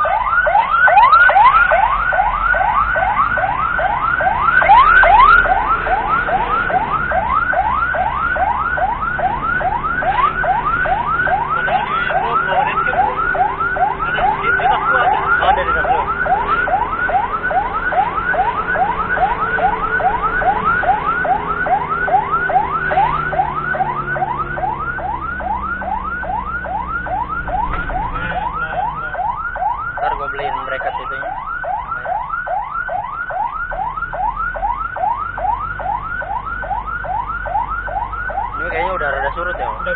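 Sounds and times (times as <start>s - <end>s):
vehicle drone: 0.0s - 30.1s
ambulance siren yelping: 0.0s - 39.9s.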